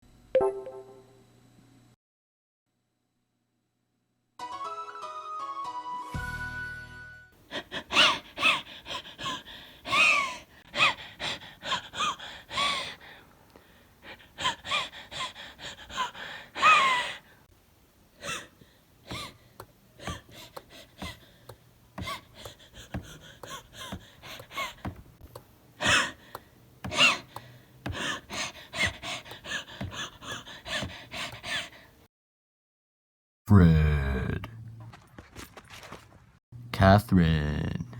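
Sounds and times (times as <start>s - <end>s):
person wheezing: 7.5s - 13.2s, 14.1s - 17.4s, 18.2s - 21.4s, 25.8s - 31.8s.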